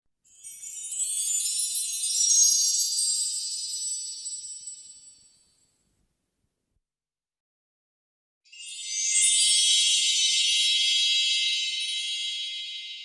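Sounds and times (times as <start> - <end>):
tinkling magic sparkle shimmer: 0.2 - 5.6, 8.5 - 13.0.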